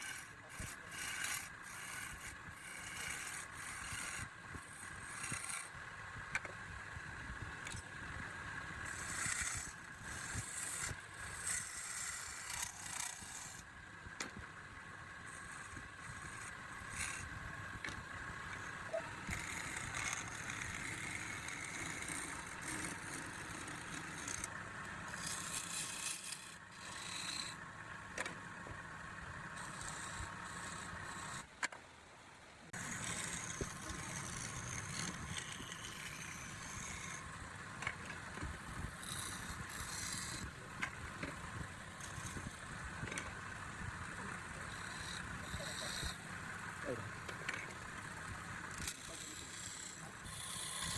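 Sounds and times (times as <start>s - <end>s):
wood lathe running: 0.0s - 5.7s, 8.8s - 13.6s, 15.3s - 17.2s, 17.8s - 28.3s, 29.5s - 31.4s, 32.8s - 50.9s
tool scraping spinning wood: 0.0s - 6.5s, 7.6s - 14.4s, 15.1s - 31.5s, 32.7s - 50.9s.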